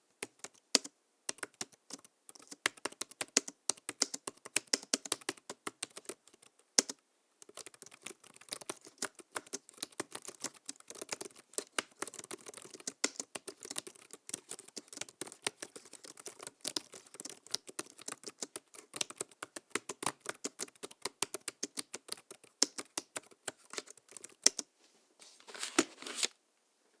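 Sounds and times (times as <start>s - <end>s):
fast typing on laptop keyboard: 0.2s - 24.7s
brief rustle: 25.2s - 26.4s.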